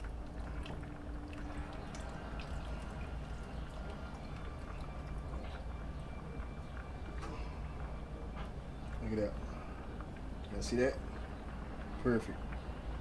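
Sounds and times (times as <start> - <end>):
liquid sloshing in a pot: 0.0 - 6.8
steady low hum: 0.0 - 13.0.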